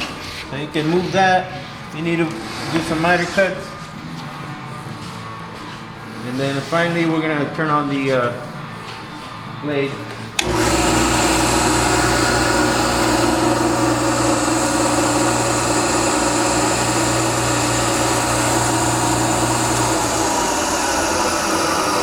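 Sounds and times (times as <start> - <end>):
saw blade whining: 10.4 - 22.0.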